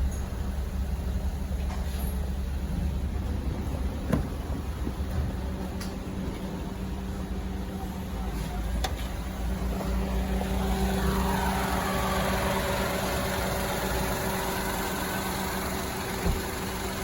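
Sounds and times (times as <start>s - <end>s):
air conditioning rushing noise: 0.0s - 12.3s
car engine idling: 0.0s - 17.0s.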